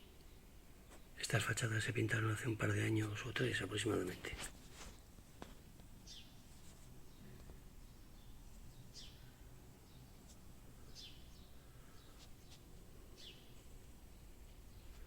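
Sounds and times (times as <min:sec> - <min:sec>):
low background hum: 0:00.0 - 0:15.0
small bird chirping: 0:06.0 - 0:15.0.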